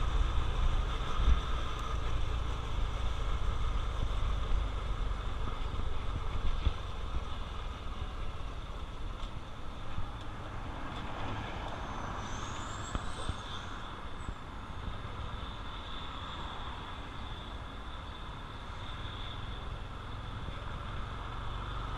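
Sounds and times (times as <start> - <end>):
faint high whistle: 11.9 - 14.4.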